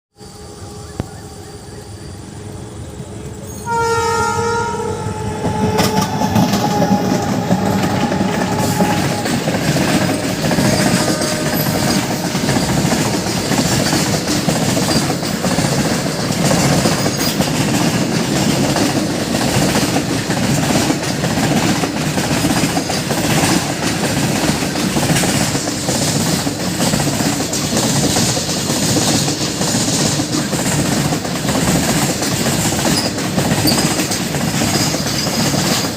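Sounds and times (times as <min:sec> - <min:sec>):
train wagons rumbling: 0:00.2 - 0:35.9
locomotive horn: 0:03.4 - 0:12.8
wheels clacking over rail joints: 0:05.4 - 0:35.9.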